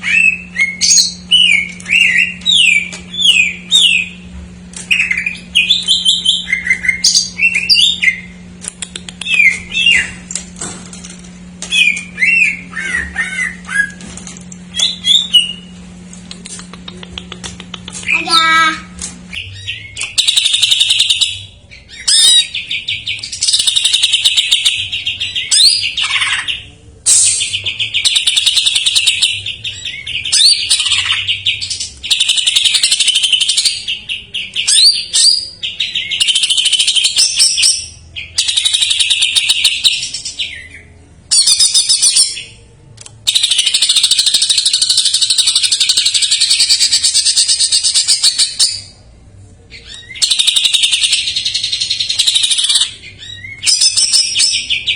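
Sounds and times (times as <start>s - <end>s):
bird singing loudly: 11.8s - 14.0s, 49.8s - 54.9s.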